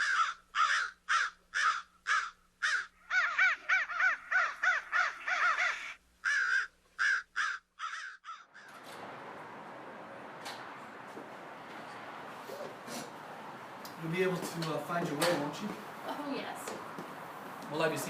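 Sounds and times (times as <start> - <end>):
crows cawing: 0.0 - 9.0.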